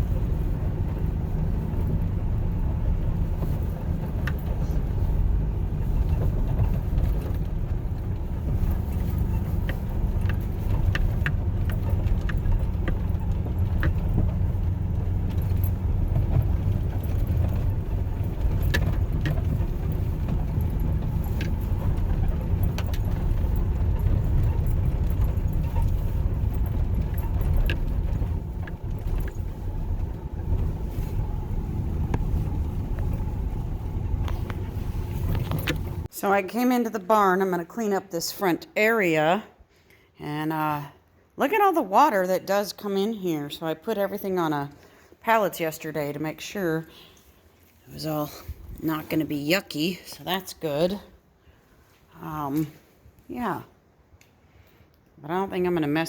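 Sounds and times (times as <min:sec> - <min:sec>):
light clicks and rattles: 0:00.0 - 0:36.1
truck engine and road rumble: 0:00.0 - 0:56.0.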